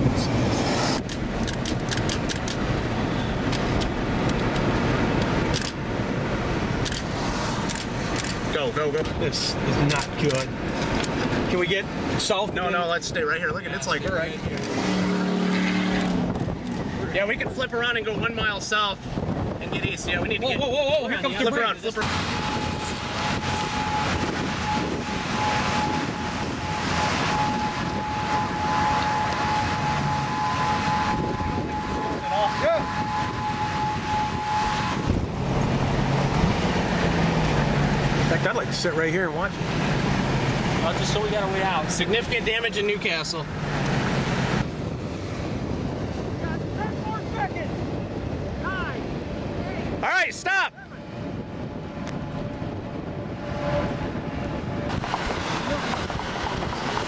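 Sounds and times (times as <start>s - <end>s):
car interior rumble: 0.0s - 57.0s
rushing wind: 0.0s - 57.0s
vehicle noise: 0.0s - 57.0s
warning siren steady tone: 22.0s - 36.4s.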